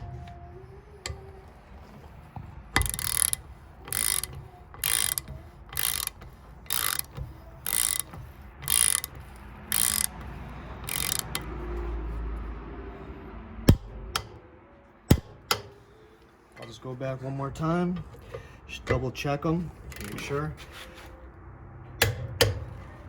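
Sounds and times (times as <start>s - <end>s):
torque wrench ratcheting: 2.8s - 11.6s.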